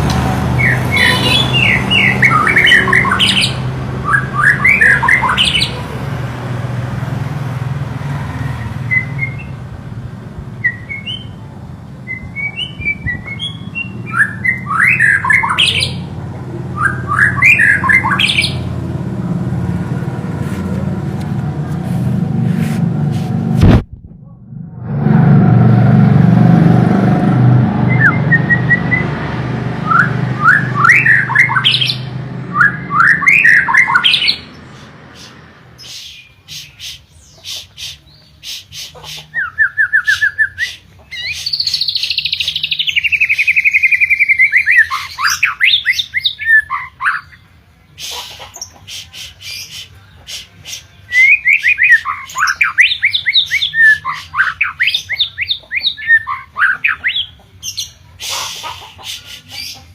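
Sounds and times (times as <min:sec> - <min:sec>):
bird singing whistled phrases: 0:00.6 - 0:05.7, 0:10.6 - 0:11.3, 0:12.1 - 0:16.0, 0:39.3 - 0:47.4, 0:51.1 - 0:57.9
loud low rumble: 0:18.6 - 0:30.8.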